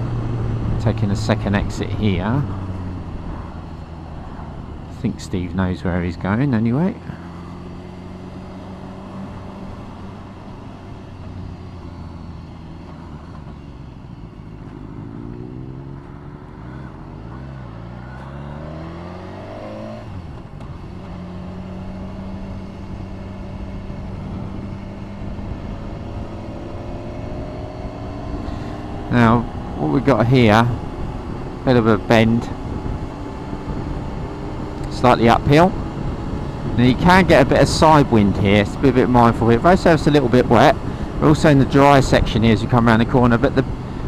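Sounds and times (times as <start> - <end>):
wind and road rush: 0.0 - 44.0
motorcycle engine running: 6.5 - 41.4.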